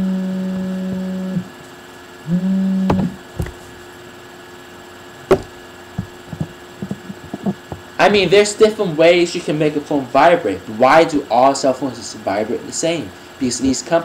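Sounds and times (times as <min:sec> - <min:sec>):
cell phone vibrating: 0:00.0 - 0:01.6, 0:02.2 - 0:03.7
sharp knocks: 0:02.9 - 0:03.6, 0:05.3 - 0:07.8.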